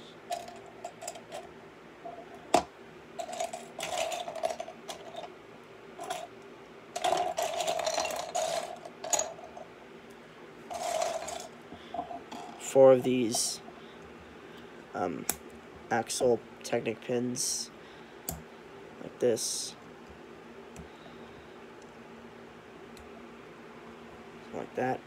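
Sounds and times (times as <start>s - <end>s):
plastic pieces clicking and rattling: 3.2s - 5.3s, 7.0s - 9.4s, 10.7s - 11.5s.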